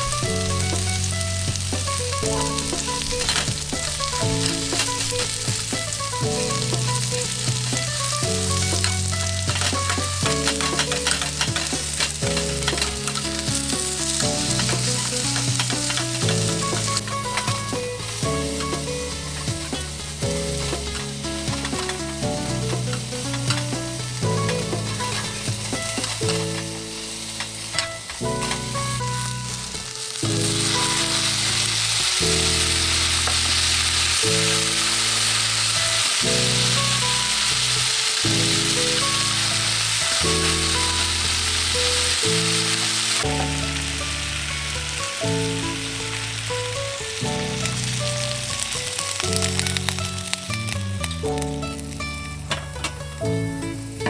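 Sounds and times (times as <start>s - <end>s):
background music with bassline: 0.0s - 35.0s
food sizzling in a pan: 0.0s - 54.0s.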